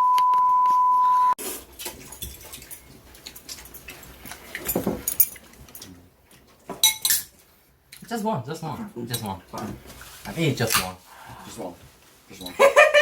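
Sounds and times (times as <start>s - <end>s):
loud steady beep: 0.0s - 1.4s
dishes clattering: 2.0s - 5.9s, 6.7s - 7.4s.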